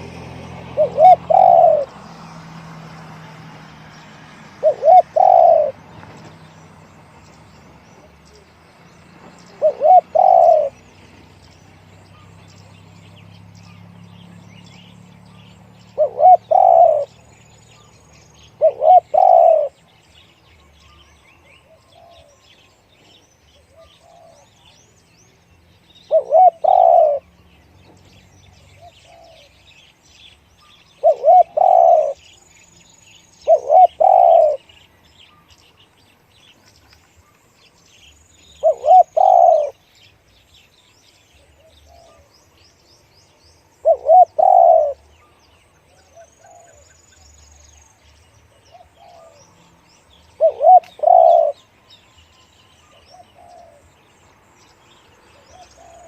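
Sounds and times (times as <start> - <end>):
small birds chirping faintly: 0.0 - 56.0
dove cooing: 0.6 - 2.0, 4.6 - 6.4, 9.4 - 11.2, 15.9 - 17.2, 18.4 - 19.8, 21.6 - 22.6, 23.7 - 24.6, 26.1 - 27.3, 28.6 - 29.6, 31.0 - 32.3, 33.4 - 34.8, 38.5 - 39.8, 43.8 - 45.0, 45.9 - 47.0, 48.7 - 49.5, 50.3 - 51.7, 52.9 - 54.0, 55.4 - 56.0.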